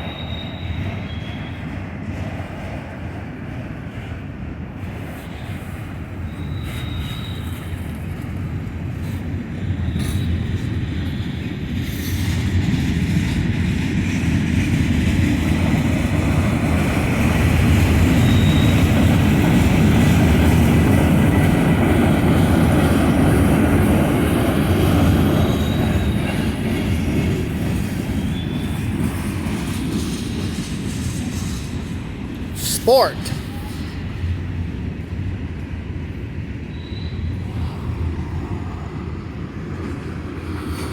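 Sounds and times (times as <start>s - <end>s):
high wheel squeals: 0.0s - 1.6s, 6.3s - 7.7s, 18.2s - 19.0s
train wheels rumbling on rail: 0.0s - 32.6s, 33.3s - 40.9s.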